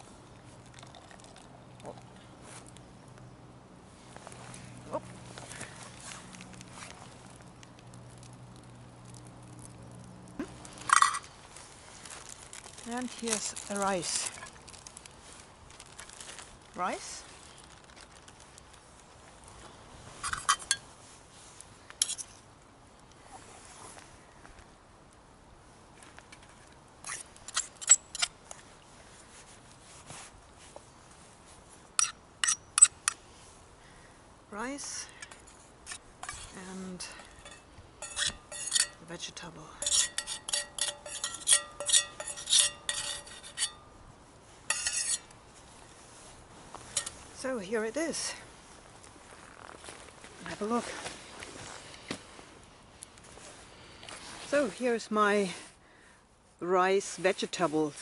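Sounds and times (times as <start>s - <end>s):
wood fire crackling: 4.0s - 20.0s, 35.2s - 54.9s
metal utensil clinking on pot: 37.2s - 39.0s, 39.8s - 43.8s, 44.7s - 45.2s.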